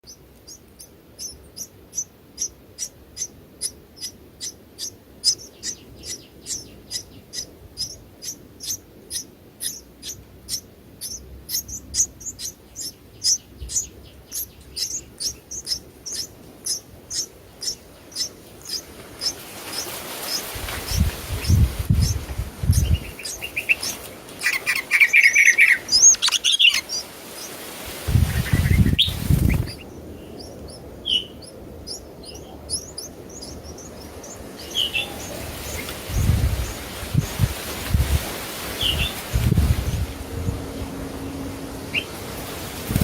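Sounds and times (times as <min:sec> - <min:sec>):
sparrow chirping: 0:00.0 - 0:37.5, 0:38.8 - 0:40.0, 0:41.8 - 0:42.2
rustling: 0:17.9 - 0:24.8.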